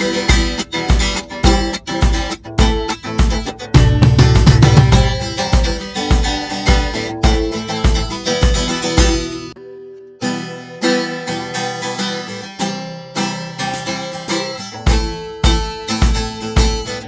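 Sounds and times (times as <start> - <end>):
strummed acoustic guitar: 0.0 - 17.0
low drum beat: 0.3 - 9.3.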